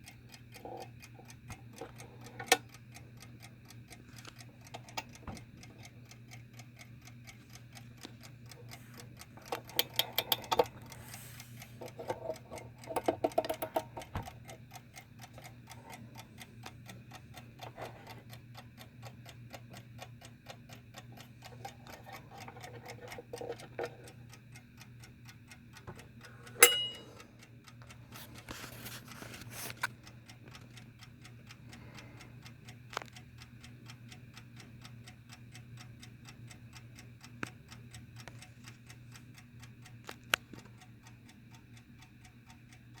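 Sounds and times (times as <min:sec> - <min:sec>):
alarm clock ticking: 0:00.0 - 0:43.0
brief bell ring: 0:26.6 - 0:27.2.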